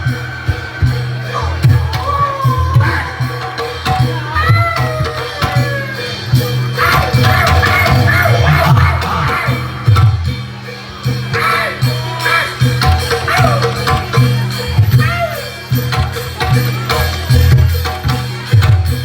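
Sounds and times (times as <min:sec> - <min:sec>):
pitch-bending melody: 0:00.0 - 0:14.8
percussion: 0:00.0 - 0:19.0.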